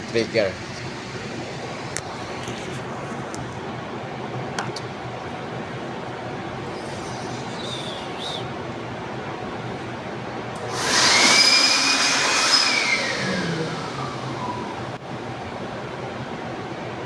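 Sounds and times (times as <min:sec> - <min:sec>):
electric blower motor whine: 0:10.6 - 0:15.0.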